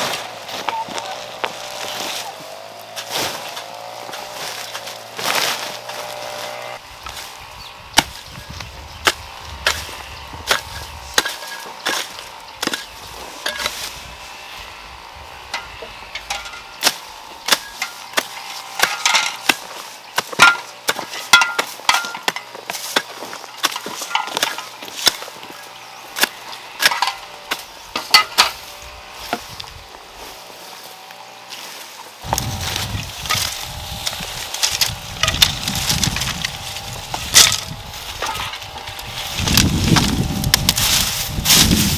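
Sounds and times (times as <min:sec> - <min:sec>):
hand tools knocking and clinking: 0:15.5 - 0:16.7, 0:17.5 - 0:22.8, 0:23.5 - 0:25.2, 0:26.8 - 0:27.3, 0:28.0 - 0:28.6.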